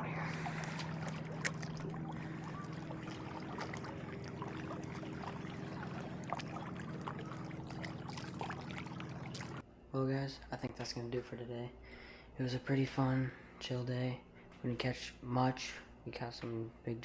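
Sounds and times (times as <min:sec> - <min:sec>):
boat motor humming: 0:00.0 - 0:09.6
water lapping against hull: 0:00.0 - 0:09.6.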